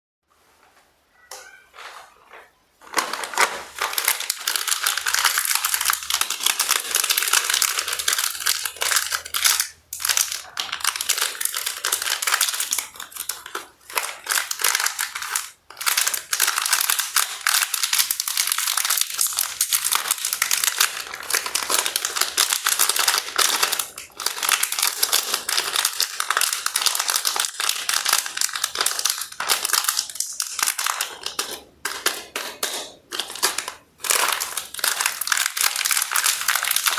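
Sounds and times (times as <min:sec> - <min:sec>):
plastic wrappers crinkling: 0:01.8 - 0:36.9.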